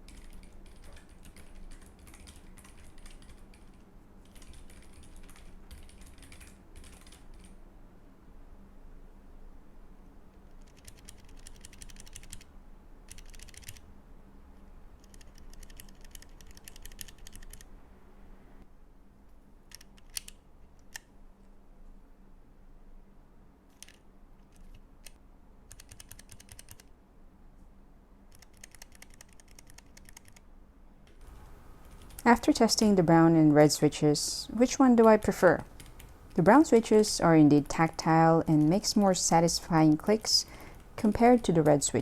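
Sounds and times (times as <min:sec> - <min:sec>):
mechanical keyboard typing: 0:00.0 - 0:07.5, 0:10.5 - 0:12.5, 0:13.1 - 0:13.8, 0:15.0 - 0:17.7, 0:19.7 - 0:21.1, 0:23.7 - 0:26.9, 0:28.3 - 0:30.4, 0:31.8 - 0:32.3, 0:35.0 - 0:36.1.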